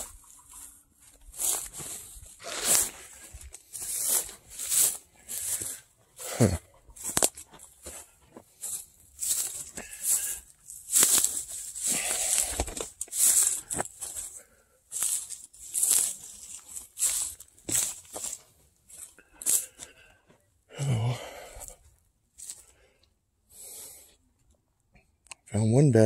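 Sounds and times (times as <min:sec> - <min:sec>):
crunching and rustling: 0:00.0 - 0:20.1.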